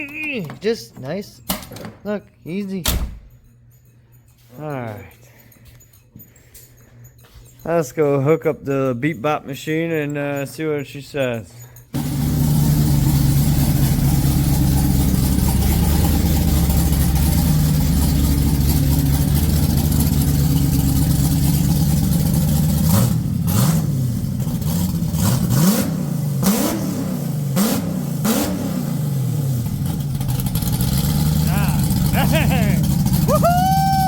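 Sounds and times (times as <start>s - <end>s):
engine idling and revving: 11.9s - 34.0s.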